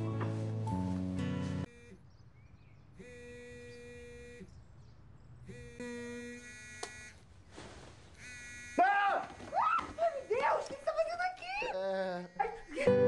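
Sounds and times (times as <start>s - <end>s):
guitar song: 0.0s - 1.7s
electronic buzzer tones: 1.6s - 2.2s, 2.9s - 4.6s, 5.4s - 7.2s, 8.2s - 10.8s, 11.7s - 13.0s.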